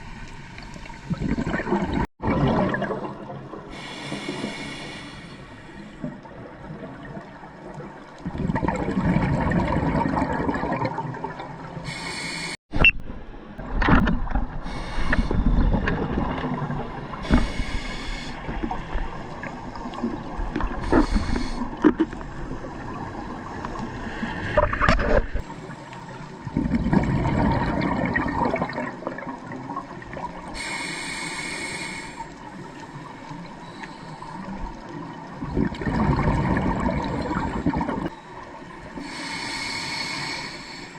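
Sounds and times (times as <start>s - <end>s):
gurgling exhaled bubbles: 1.0s - 4.7s, 6.0s - 11.8s, 13.6s - 25.5s, 26.4s - 30.6s, 34.8s - 38.2s
hissing regulator inhalation: 3.7s - 6.0s, 11.8s - 12.6s, 14.6s - 15.4s, 17.2s - 18.6s, 20.8s - 21.9s, 30.6s - 32.4s, 39.0s - 40.9s.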